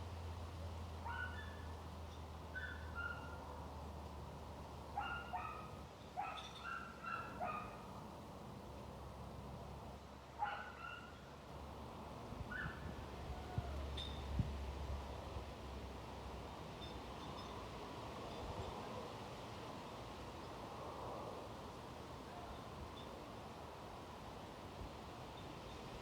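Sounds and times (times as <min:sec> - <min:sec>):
dog barking: 0:01.0 - 0:01.6, 0:02.6 - 0:03.4, 0:05.0 - 0:07.8, 0:10.4 - 0:11.1.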